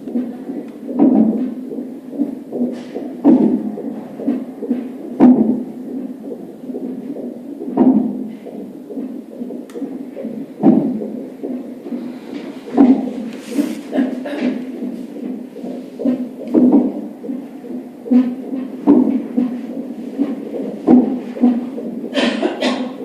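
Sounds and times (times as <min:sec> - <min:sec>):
fast steady pulsing: 0:00.0 - 0:23.0
hiccup thumps: 0:20.9 - 0:23.0.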